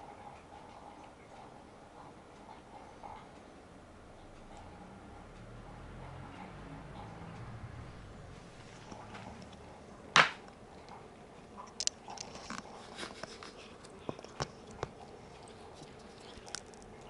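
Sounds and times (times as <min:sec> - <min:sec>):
cat chewing grass: 0:10.6 - 0:17.0.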